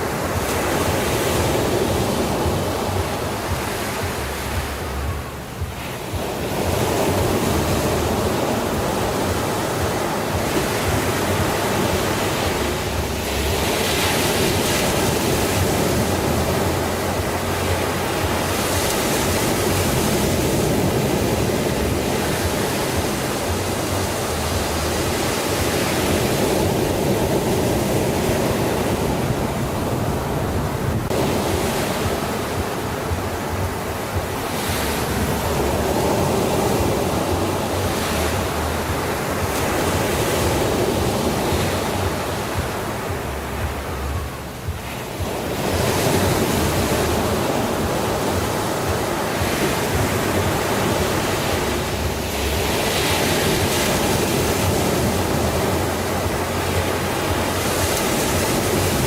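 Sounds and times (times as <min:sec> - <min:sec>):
sea waves breaking on shore: 0:00.0 - 0:59.0.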